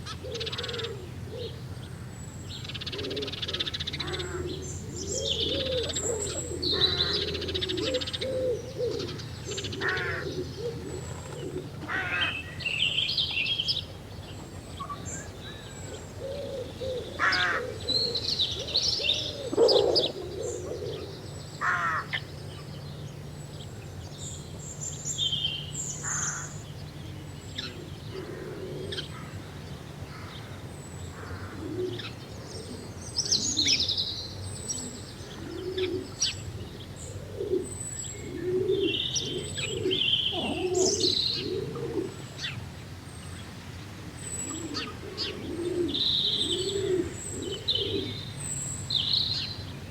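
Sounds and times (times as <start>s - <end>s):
low warbling bird calls: 0.0s - 49.9s
birds chirping and whistling: 32.0s - 41.9s.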